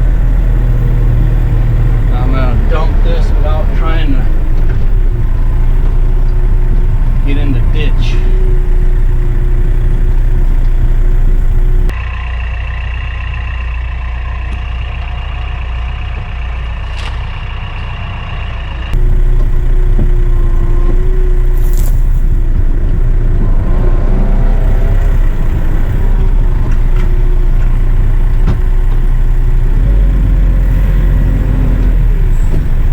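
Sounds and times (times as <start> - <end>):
steady high whine: 0.0 - 11.9, 19.0 - 23.7
tractor diesel engine running: 0.0 - 32.9.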